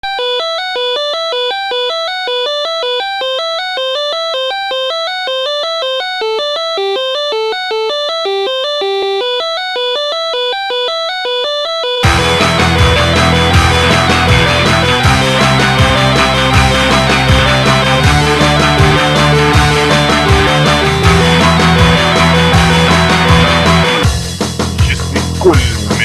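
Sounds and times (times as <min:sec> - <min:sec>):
electronic melody: 0:00.0 - 0:24.2.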